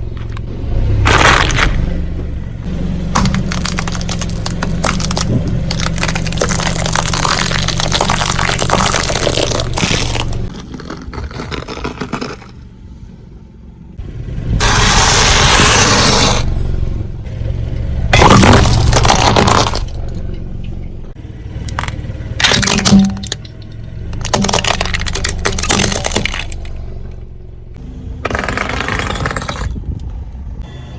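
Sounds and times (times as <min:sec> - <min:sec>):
car tyre crushing objects: 0:01.0 - 0:01.9, 0:02.6 - 0:12.9, 0:14.6 - 0:16.8, 0:18.1 - 0:20.4, 0:21.6 - 0:27.4, 0:28.2 - 0:29.9
car engine humming: 0:02.2 - 0:10.5, 0:12.6 - 0:29.5.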